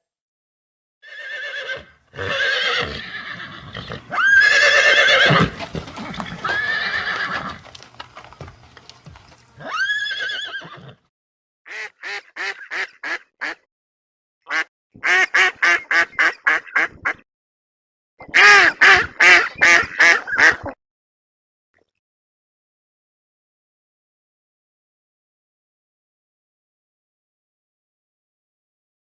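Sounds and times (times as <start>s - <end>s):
horse neighing: 1.0s - 7.7s, 9.5s - 11.1s
duck quacks: 11.7s - 13.7s, 14.5s - 17.2s, 18.2s - 20.8s.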